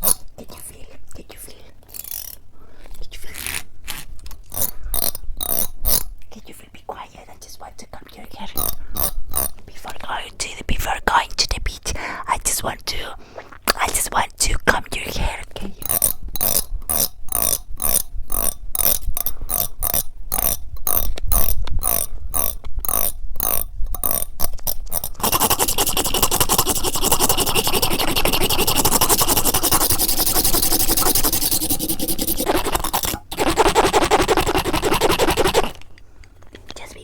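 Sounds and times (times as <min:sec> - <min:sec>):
comb scraping on microphone: 0:24.0 - 0:35.9.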